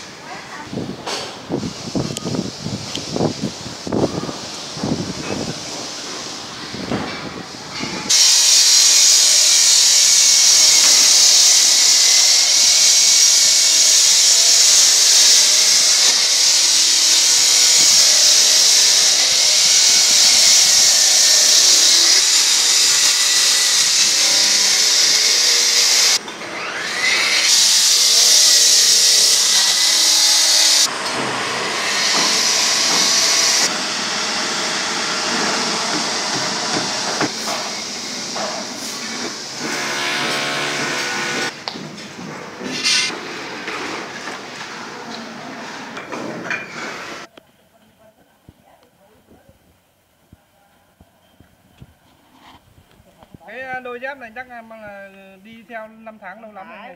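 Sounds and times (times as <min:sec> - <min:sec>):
saw grinding through steel: 0:07.8 - 0:41.6, 0:42.7 - 0:43.2.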